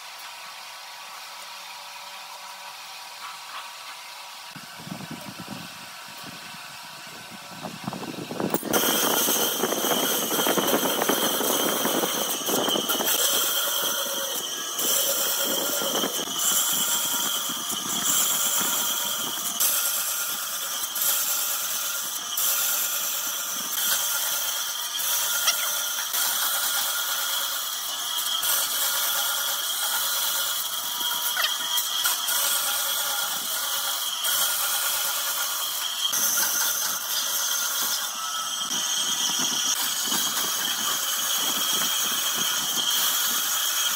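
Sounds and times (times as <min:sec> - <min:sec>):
power tool whining: 0:00.0 - 0:43.9.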